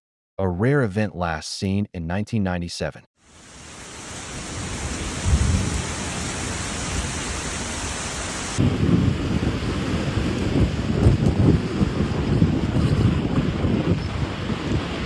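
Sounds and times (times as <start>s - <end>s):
heavy rain: 3.2s - 15.0s
thunder rumbling: 4.2s - 15.0s
wind gusting on microphone: 4.5s - 15.0s.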